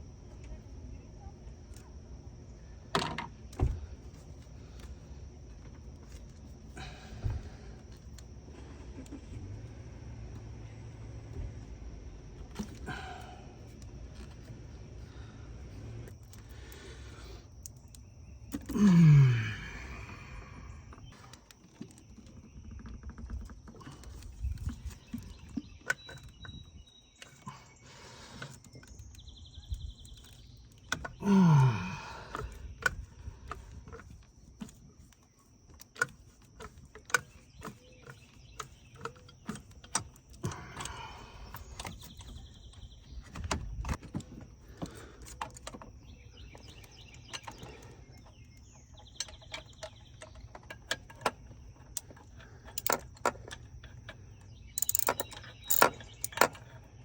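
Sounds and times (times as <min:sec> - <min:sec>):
hand tools clinking on metal: 0:49.1 - 0:56.7.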